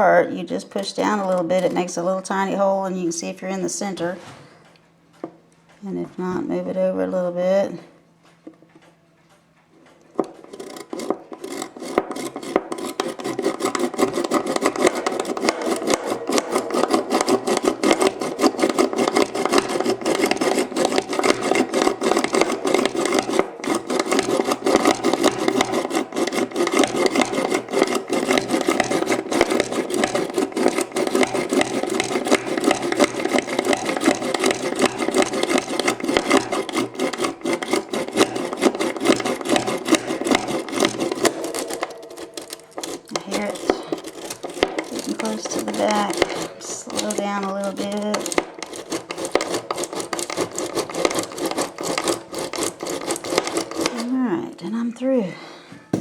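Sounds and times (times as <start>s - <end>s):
push drill boring into wood: 10.2s - 54.1s.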